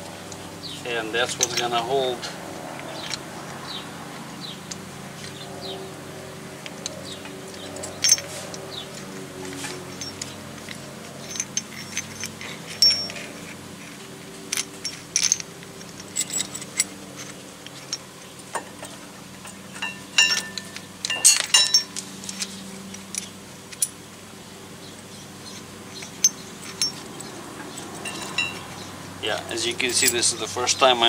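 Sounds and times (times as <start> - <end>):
metal tool parts clinking: 1.1 - 3.2, 6.7 - 8.7, 9.6 - 24.0, 25.4 - 30.5.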